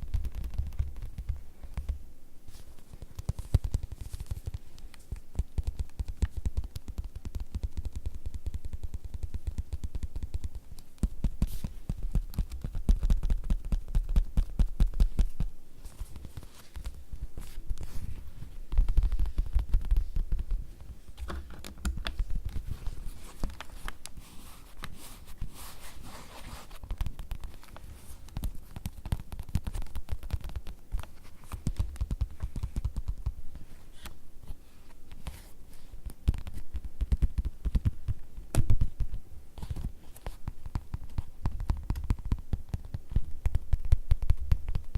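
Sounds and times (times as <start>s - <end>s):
fingertips tapping on leather: 0.0s - 2.0s, 2.9s - 15.5s, 18.6s - 24.2s, 26.8s - 33.4s, 36.0s - 39.2s, 40.2s - 44.9s.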